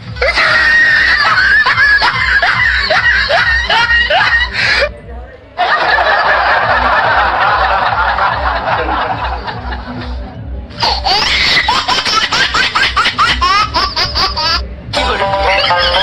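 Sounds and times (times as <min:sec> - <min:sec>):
music beat: 0:00.0 - 0:16.0
laughter sound effects: 0:00.1 - 0:04.9, 0:05.6 - 0:16.0
high-pitched yelping laugh: 0:00.2 - 0:04.9, 0:10.8 - 0:16.0.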